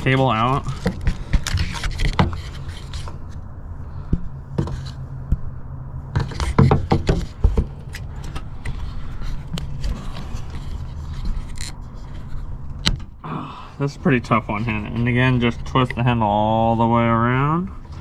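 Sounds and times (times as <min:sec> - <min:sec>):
steady low hum: 0:00.0 - 0:18.0
truck door handle clicks and scrapes: 0:06.1 - 0:13.1.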